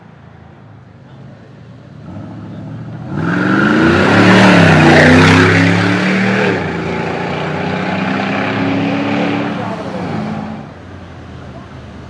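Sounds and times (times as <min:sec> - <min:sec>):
car engine accelerating hard: 0:02.0 - 0:10.8.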